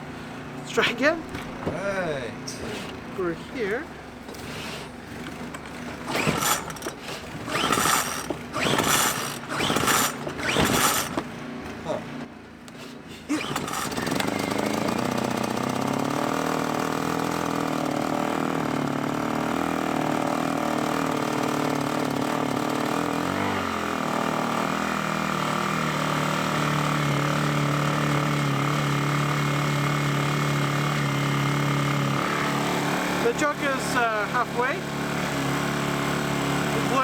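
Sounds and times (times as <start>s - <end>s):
generator engine running: 0.0s - 12.6s, 13.3s - 37.0s
recoil starter pull: 4.2s - 11.4s, 12.7s - 19.6s.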